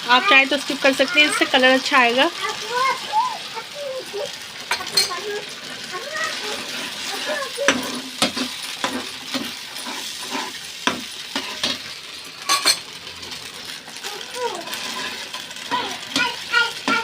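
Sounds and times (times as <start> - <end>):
sauce sizzling in a pan: 0.0 - 17.0
spoon scraping against a pan: 4.6 - 5.4, 6.2 - 13.4, 14.6 - 17.0.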